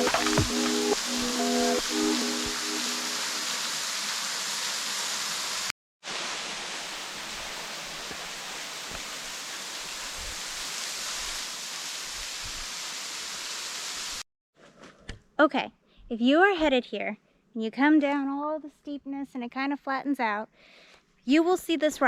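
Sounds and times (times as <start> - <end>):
waterfall rushing: 0.0 - 11.7.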